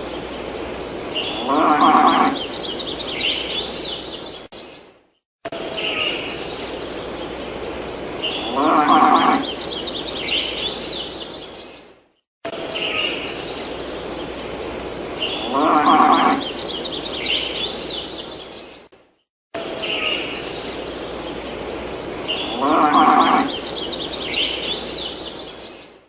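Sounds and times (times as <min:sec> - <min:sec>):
background hiss: 0:00.0 - 0:12.0, 0:12.6 - 0:19.0, 0:19.6 - 0:26.0
farm animal call: 0:01.3 - 0:02.5, 0:08.4 - 0:09.6, 0:15.4 - 0:16.6, 0:22.4 - 0:23.7.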